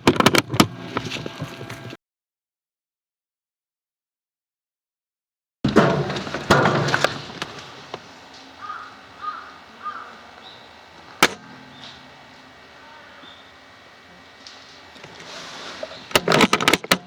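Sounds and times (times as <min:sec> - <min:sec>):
noisy burst: 0:05.7 - 0:17.0
crow-like caws: 0:08.3 - 0:15.0.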